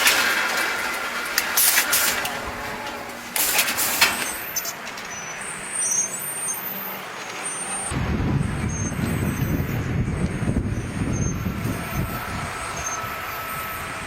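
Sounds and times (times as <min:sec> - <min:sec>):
machinery clicks: 0:00.0 - 0:07.9
hissing high whine: 0:00.0 - 0:14.0
low engine rumble: 0:00.0 - 0:14.0.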